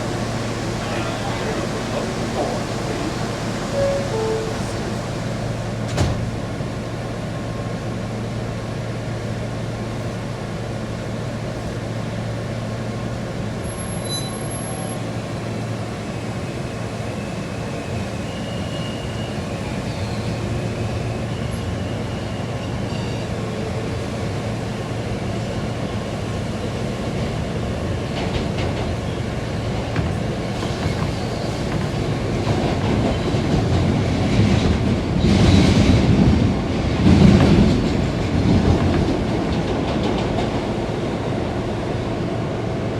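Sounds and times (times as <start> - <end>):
subway train rumbling: 0.0 - 42.9
high wheel squeals: 13.7 - 15.0, 17.6 - 23.5.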